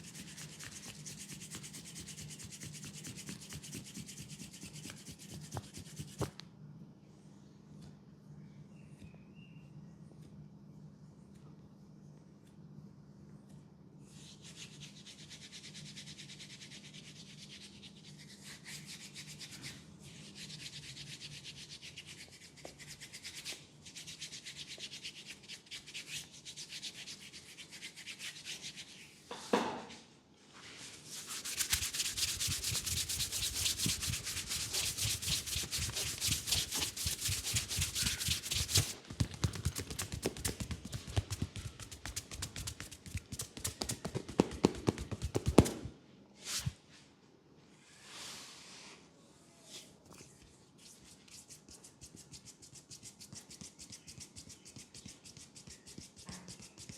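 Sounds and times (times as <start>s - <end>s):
hands rubbing skin: 0.0s - 6.4s, 30.7s - 45.9s, 49.7s - 56.9s.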